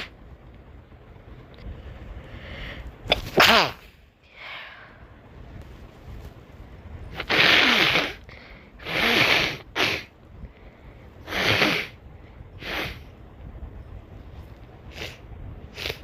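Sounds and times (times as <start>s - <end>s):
person sneezing: 3.1s - 3.8s.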